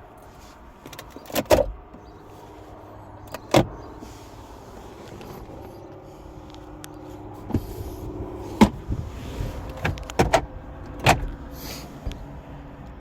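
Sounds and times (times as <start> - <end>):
clicks and knocks of car parts: 0.8 - 2.0, 3.2 - 3.8, 8.6 - 8.9, 9.6 - 11.4.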